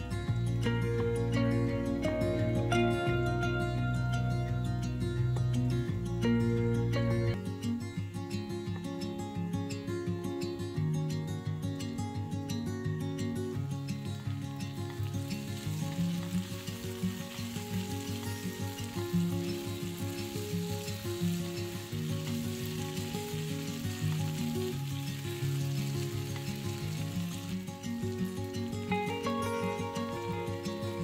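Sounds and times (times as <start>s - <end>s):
steady hiss: 13.5s - 31.0s.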